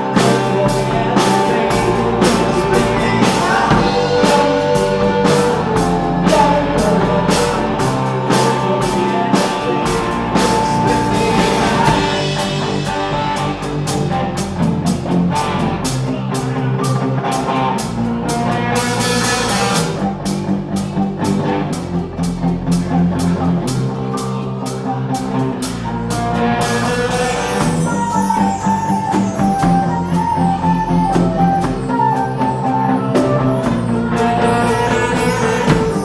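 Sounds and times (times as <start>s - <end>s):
rock band playing: 0.0s - 36.0s.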